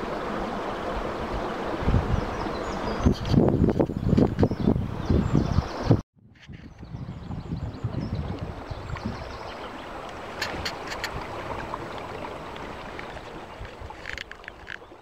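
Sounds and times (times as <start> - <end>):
river water rushing: 0.0 - 3.0, 8.4 - 15.0
wind noise: 0.0 - 15.0.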